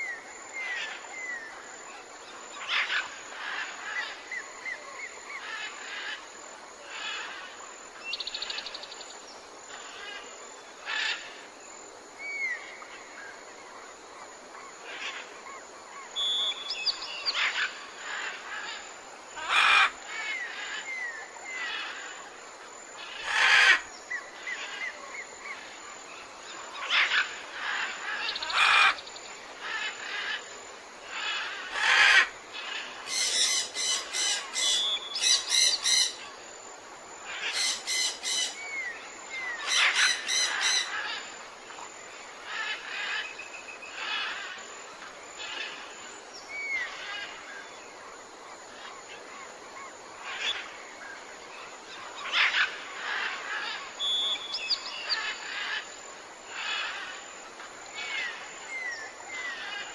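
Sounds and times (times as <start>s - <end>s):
outdoor ambience hiss: 0.0s - 59.9s
birds chirping: 31.1s - 36.3s.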